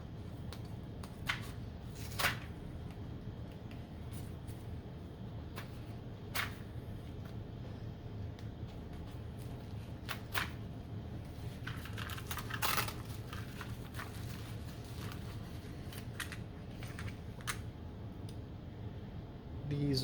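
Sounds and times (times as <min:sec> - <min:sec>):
low room hum: 0:00.0 - 0:20.0
packaging crinkling and tearing: 0:11.3 - 0:17.6.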